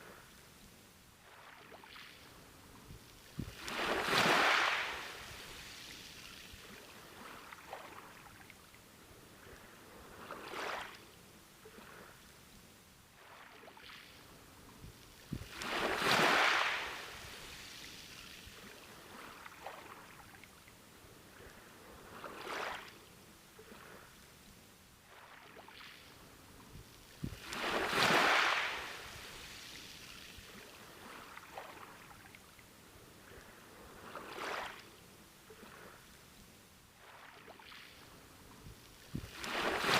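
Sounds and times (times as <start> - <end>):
receding water fizzing: 3.1 - 8.5, 15.0 - 20.4, 26.9 - 32.4, 38.8 - 39.9
ocean waves breaking: 3.4 - 8.4, 15.3 - 20.4, 27.2 - 32.3, 33.4 - 36.0, 37.0 - 39.9.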